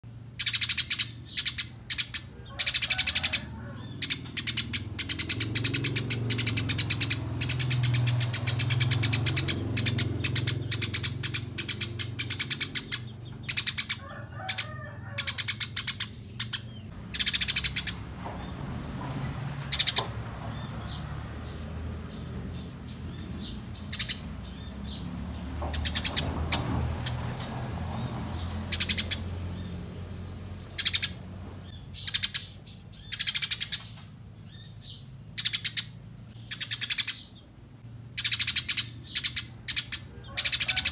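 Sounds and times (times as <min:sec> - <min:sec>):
sparrows chattering: 0:00.0 - 0:40.9.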